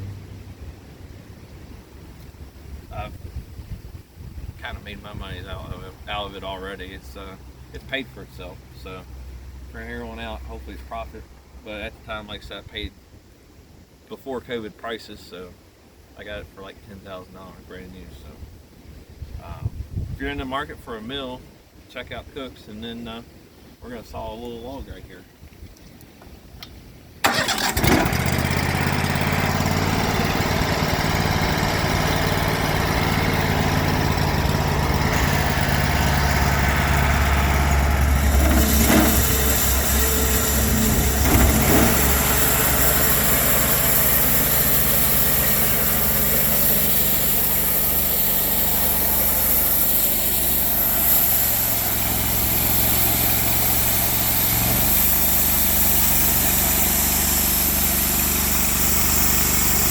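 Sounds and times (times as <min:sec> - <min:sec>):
sawmill engine running: 0:27.2 - 0:59.9
band saw blade cutting log: 0:27.6 - 0:59.9.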